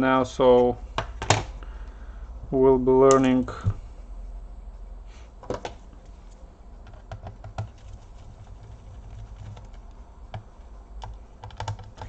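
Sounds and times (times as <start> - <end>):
steady low hum: 0.0 - 12.0
plastic clicks and taps on laptop: 6.9 - 8.0, 9.3 - 12.0.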